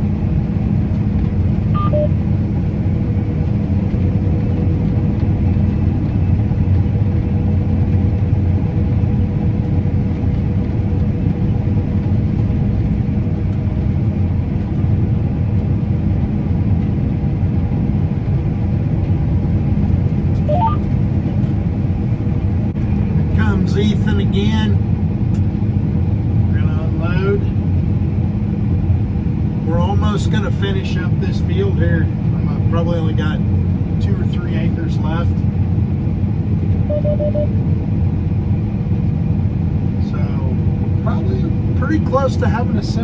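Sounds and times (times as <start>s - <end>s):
combine harvester engine drone: 0.0s - 43.0s.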